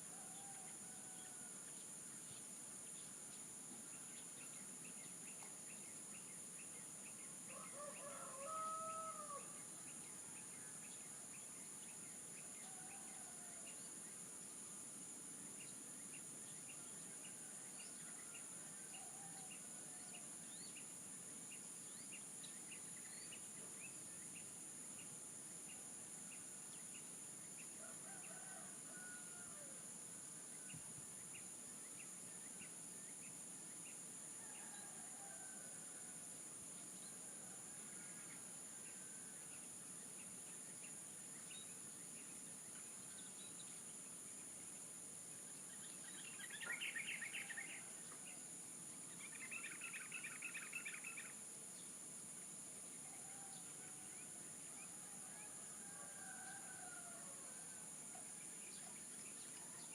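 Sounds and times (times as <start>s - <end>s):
distant roosters crowing: 7.5s - 9.6s, 27.8s - 29.8s, 55.1s - 57.8s.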